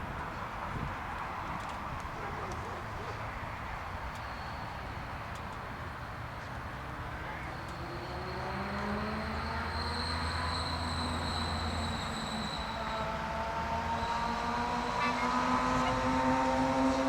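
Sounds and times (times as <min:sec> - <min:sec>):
vehicle passing with low hum: 0:06.9 - 0:17.0.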